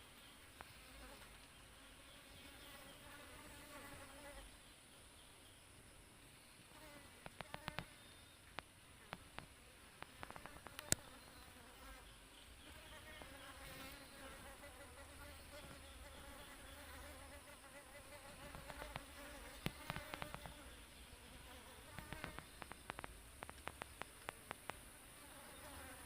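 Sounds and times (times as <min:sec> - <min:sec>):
bees buzzing: 0:09.6 - 0:26.0
sharp clicks: 0:22.0 - 0:24.8.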